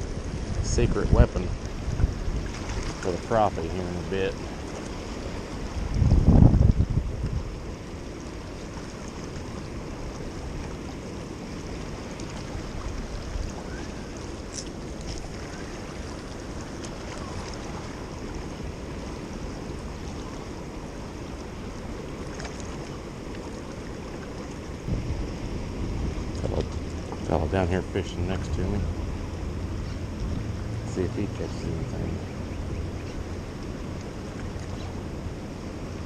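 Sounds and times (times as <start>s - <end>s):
wind buffeting microphone: 0.0s - 7.7s, 24.7s - 36.0s.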